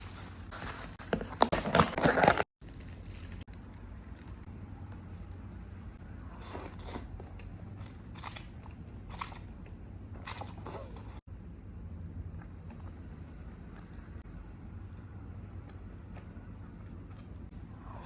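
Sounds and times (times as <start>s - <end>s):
person chewing noodles: 12.0s - 18.0s.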